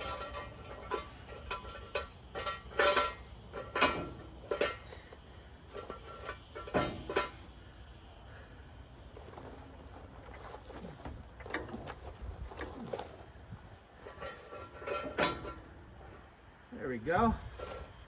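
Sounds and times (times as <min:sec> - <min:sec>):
metal jack stands clanking: 0:00.0 - 0:07.6, 0:14.0 - 0:15.9.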